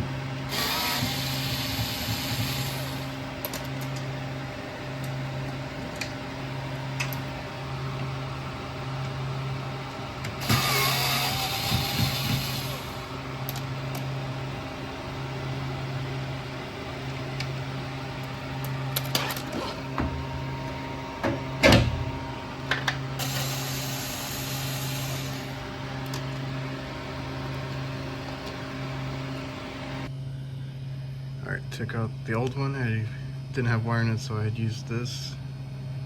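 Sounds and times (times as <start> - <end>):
steady machine hum: 0.0 - 36.0.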